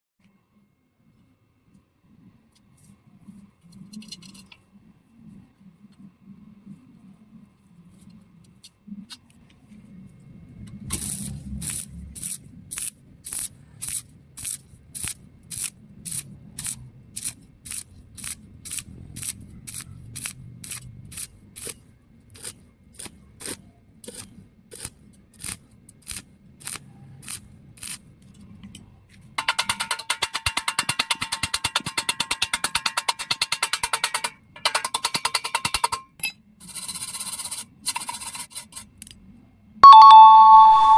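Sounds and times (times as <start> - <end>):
welding arc crackling: 10.9 - 21.8, 22.4 - 28.0.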